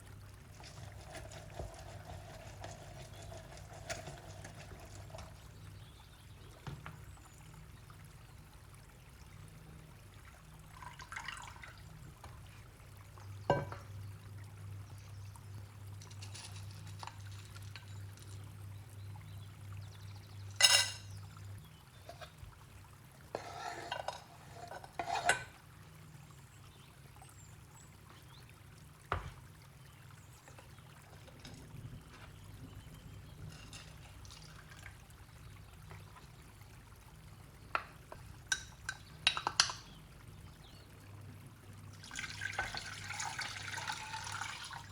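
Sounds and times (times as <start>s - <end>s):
liquid pouring: 0.0s - 5.8s, 10.1s - 14.8s, 33.2s - 39.7s, 41.8s - 44.9s
kitchenware clinking: 13.5s - 13.9s, 20.5s - 21.2s, 23.4s - 25.5s, 33.4s - 34.4s.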